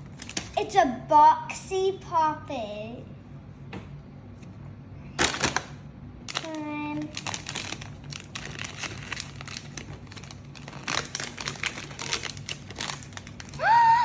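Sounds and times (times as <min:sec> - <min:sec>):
packaging crinkling and tearing: 0:00.0 - 0:00.6, 0:05.2 - 0:13.7.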